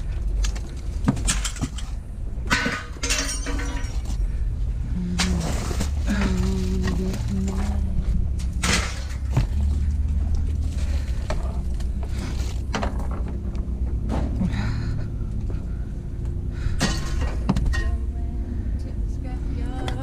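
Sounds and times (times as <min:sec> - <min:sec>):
scrap metal knocks and clunks: 0:00.0 - 0:04.4, 0:05.2 - 0:14.8, 0:16.6 - 0:18.2
steady low rumble: 0:00.0 - 0:20.0.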